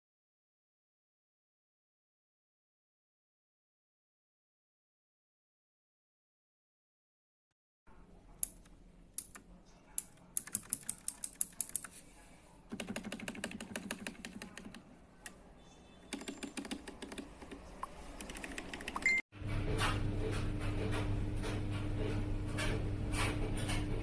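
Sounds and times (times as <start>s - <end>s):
mechanical keyboard typing: 10.0s - 12.0s, 12.7s - 14.8s, 16.1s - 19.2s.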